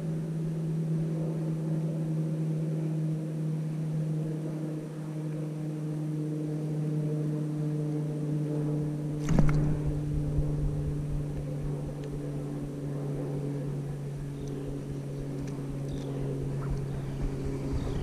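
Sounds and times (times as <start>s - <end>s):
motor humming: 7.8s - 18.0s
low rumble: 9.1s - 18.0s.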